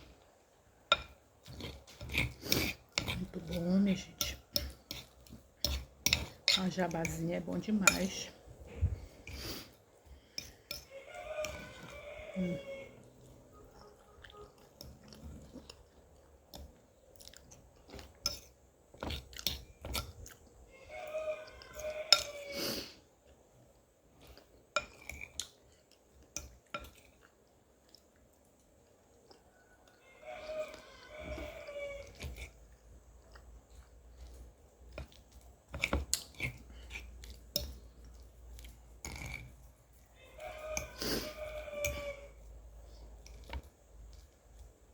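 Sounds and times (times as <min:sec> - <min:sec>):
person chewing food: 0:00.0 - 0:07.2, 0:07.9 - 0:44.9
rooster crowing: 0:10.8 - 0:13.1, 0:20.7 - 0:22.6, 0:29.5 - 0:32.3, 0:40.2 - 0:42.5.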